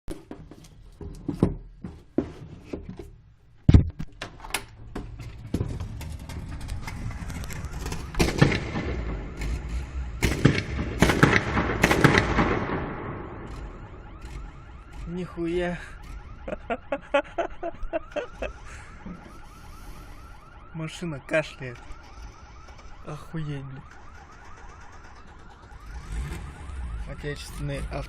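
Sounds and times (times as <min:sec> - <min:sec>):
car engine backfiring: 0:05.2 - 0:17.2, 0:23.8 - 0:28.0.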